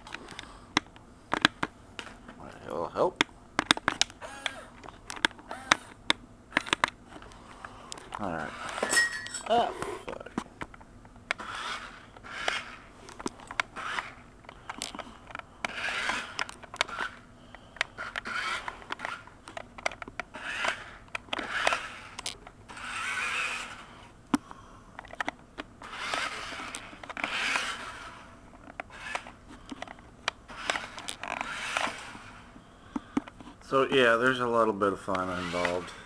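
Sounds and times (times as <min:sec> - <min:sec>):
toy car scraping and crackling: 0:06.6 - 0:09.6, 0:11.3 - 0:24.2, 0:25.0 - 0:36.0.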